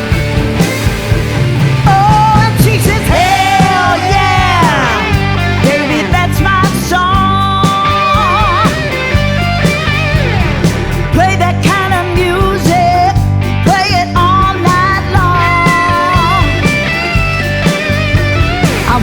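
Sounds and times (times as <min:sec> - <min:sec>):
bass: 0:00.0 - 0:19.0
drums: 0:00.0 - 0:19.0
lead guitar solo: 0:02.9 - 0:11.5, 0:14.7 - 0:19.0.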